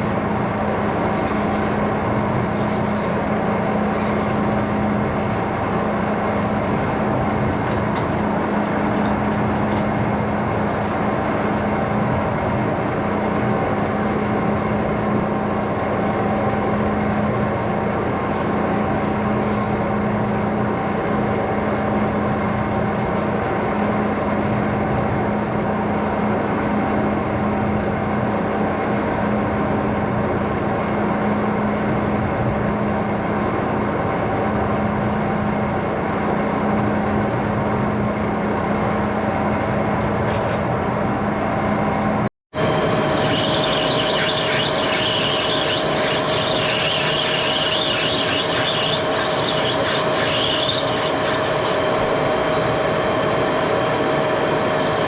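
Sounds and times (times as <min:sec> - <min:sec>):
faint high squeaks: 0:01.1 - 0:01.8, 0:02.5 - 0:03.2, 0:03.9 - 0:04.4
machine humming: 0:42.6 - 0:55.0.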